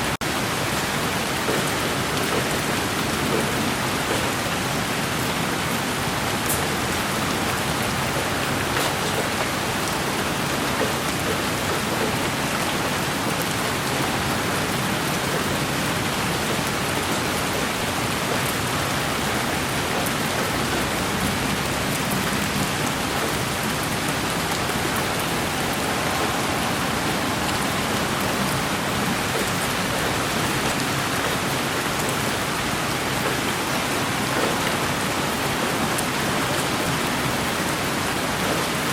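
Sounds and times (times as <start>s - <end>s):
steady rain hiss: 0.0s - 38.9s
faint raindrop ticks: 0.8s - 5.0s, 5.6s - 23.8s.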